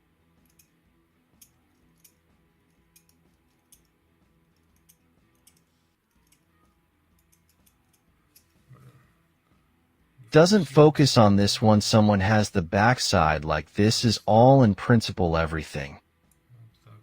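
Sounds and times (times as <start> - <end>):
low steady hum: 0.0 - 17.0
light clicks of small parts: 0.4 - 8.6.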